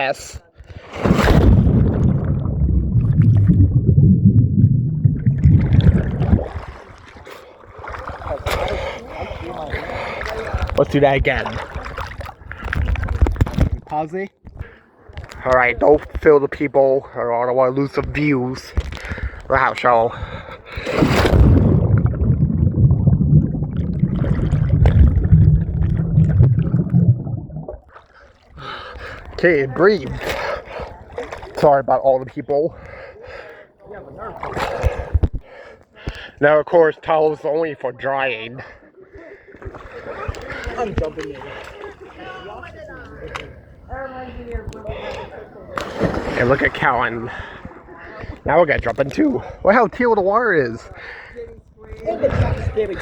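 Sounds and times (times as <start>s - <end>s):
muffled underwater churning and bubbling: 0.6s - 13.8s, 20.1s - 29.4s.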